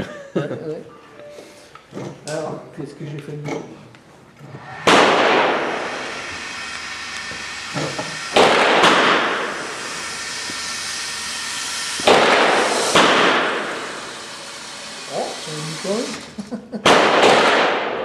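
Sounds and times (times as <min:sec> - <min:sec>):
rifle shots with echo: 0:04.8 - 0:05.8, 0:08.4 - 0:09.5, 0:12.0 - 0:13.7, 0:16.8 - 0:18.0.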